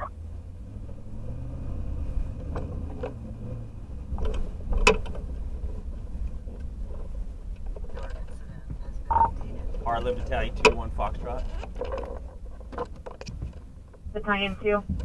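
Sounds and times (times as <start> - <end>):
vehicle engine rumbling: 0.0 - 15.0
sharp clicks and knocks: 4.1 - 5.4, 6.5 - 15.0.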